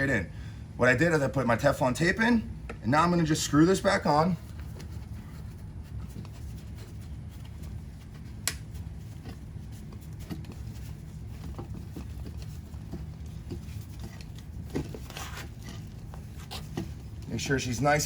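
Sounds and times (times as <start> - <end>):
pipe threads clicking and rubbing: 4.4 - 18.0.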